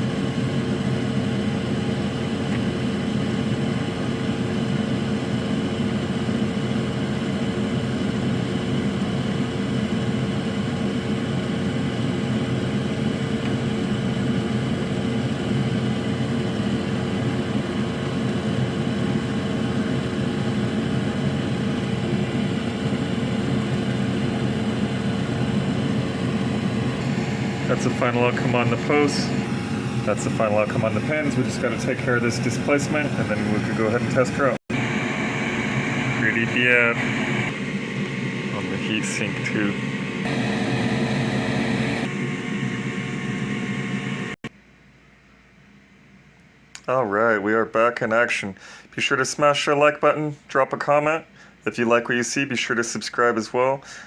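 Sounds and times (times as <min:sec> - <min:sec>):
electric fan whirring: 0:00.0 - 0:44.5
low hum: 0:20.0 - 0:44.5.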